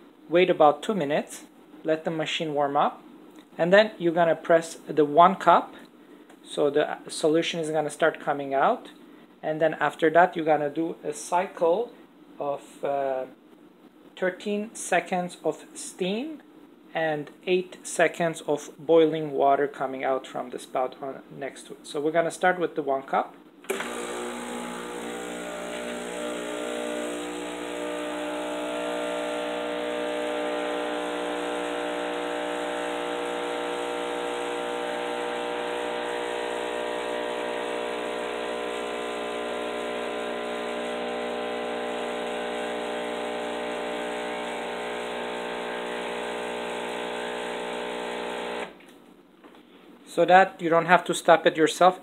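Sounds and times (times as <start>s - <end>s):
espresso machine pump humming: 23.7s - 48.8s.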